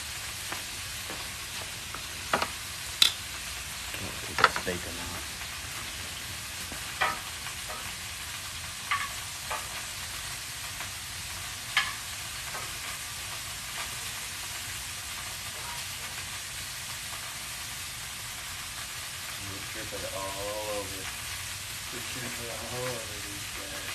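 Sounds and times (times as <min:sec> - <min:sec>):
bacon sizzling on a griddle: 0:00.0 - 0:23.9.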